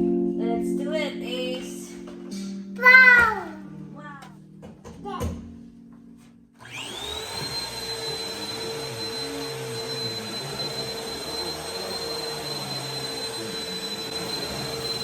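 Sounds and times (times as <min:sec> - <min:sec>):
vacuum cleaner running on rug: 0:06.6 - 0:15.0.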